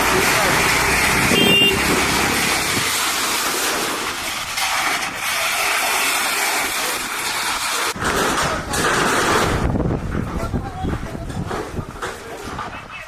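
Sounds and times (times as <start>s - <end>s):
strong gusty wind: 0.6s - 3.2s, 8.0s - 12.0s
brief high tone: 1.3s - 1.9s.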